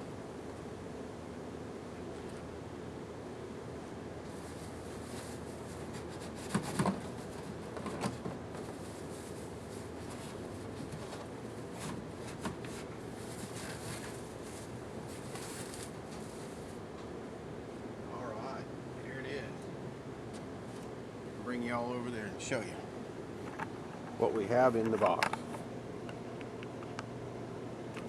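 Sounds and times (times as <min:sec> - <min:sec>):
steady background hiss: 0:00.0 - 0:28.0.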